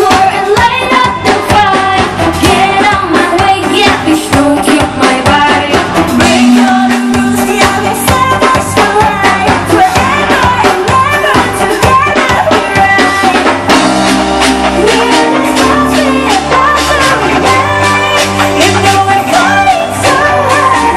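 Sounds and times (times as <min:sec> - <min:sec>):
woman singing: 0:00.0 - 0:13.8, 0:14.6 - 0:20.9
drum kit beat: 0:00.0 - 0:20.9.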